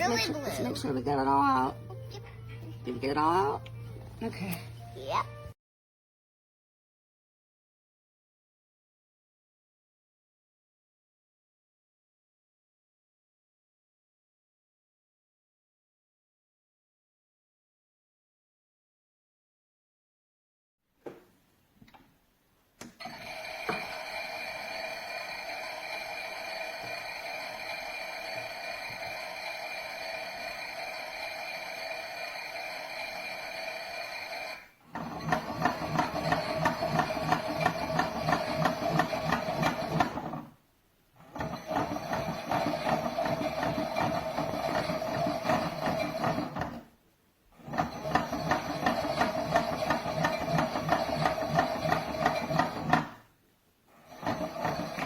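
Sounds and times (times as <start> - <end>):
toy washing machine hum: 0.0 - 3.8, 22.9 - 40.6, 41.2 - 46.9, 47.6 - 53.2, 53.9 - 55.0.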